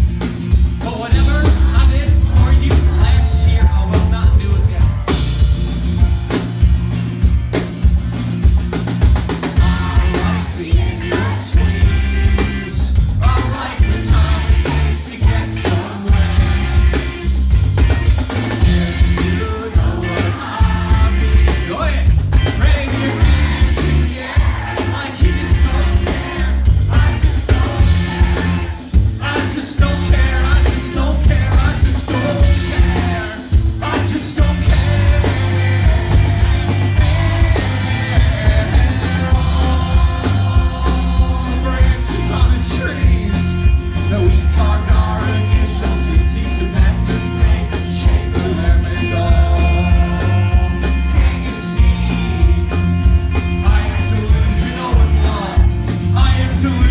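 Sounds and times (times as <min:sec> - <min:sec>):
live rock band playing: 0:00.0 - 0:56.9
person singing: 0:00.9 - 0:05.1, 0:18.6 - 0:52.8.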